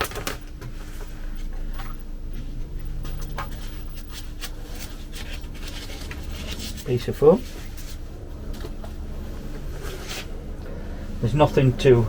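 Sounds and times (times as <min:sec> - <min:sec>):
packing foam rubbing and scraping: 0:03.4 - 0:08.2.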